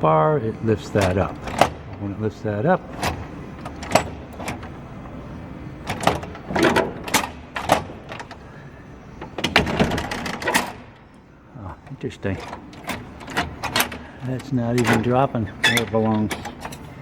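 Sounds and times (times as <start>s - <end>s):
door latch metal clicks: 2.9s - 4.8s, 5.8s - 8.4s, 9.2s - 11.1s, 12.4s - 17.0s.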